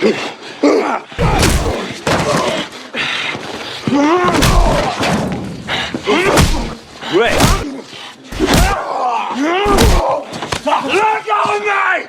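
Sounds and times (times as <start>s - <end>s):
men grunting: 0.6s - 2.7s, 4.0s - 5.1s, 6.1s - 10.4s
heavy punch thuds: 1.2s - 1.8s, 4.4s - 4.9s, 6.2s - 7.7s, 8.3s - 8.8s, 9.7s - 10.0s.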